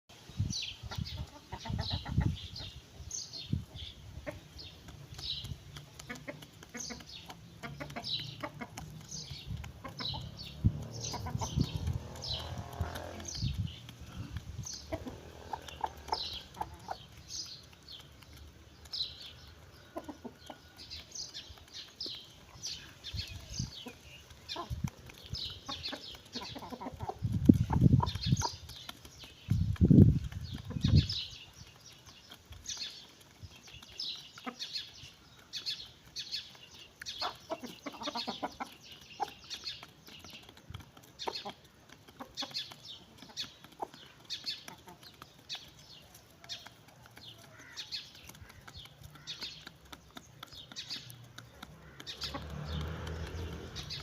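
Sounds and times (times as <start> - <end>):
chickens clucking: 0.4 - 54.0
sharp pecking taps: 4.2 - 54.0.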